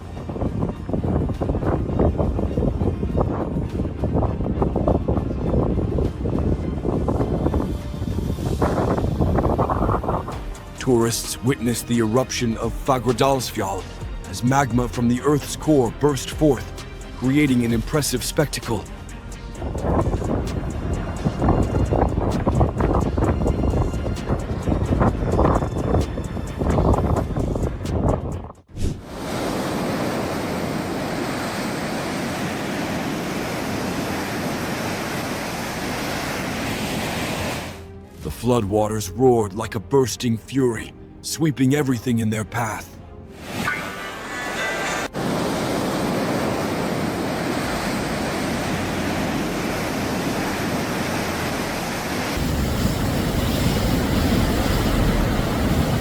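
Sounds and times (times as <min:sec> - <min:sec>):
floodwater rushing and churning: 0:28.8 - 0:38.2, 0:45.0 - 0:56.0.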